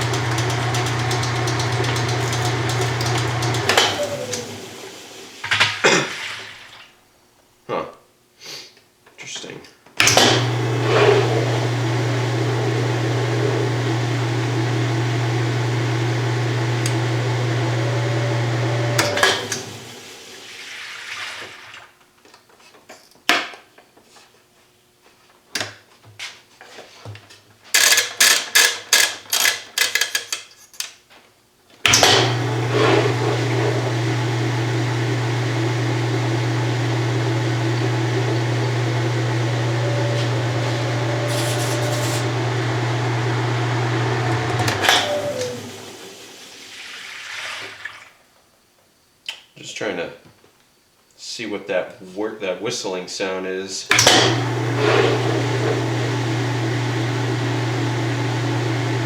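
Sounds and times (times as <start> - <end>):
washing machine motor hum: 0.0 - 6.7, 10.0 - 20.8, 31.9 - 47.0, 53.9 - 59.0.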